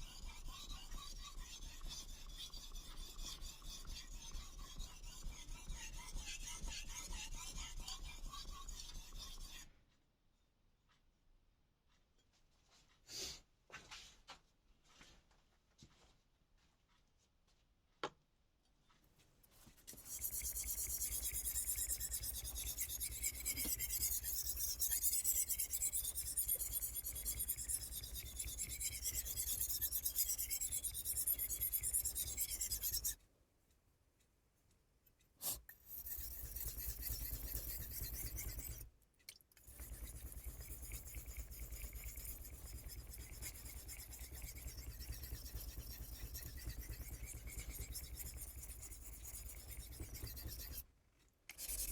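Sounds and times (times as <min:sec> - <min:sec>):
knife scraping on whetstone: 0:19.9 - 0:33.2, 0:35.4 - 0:38.9, 0:39.6 - 0:50.8, 0:51.5 - 0:51.9.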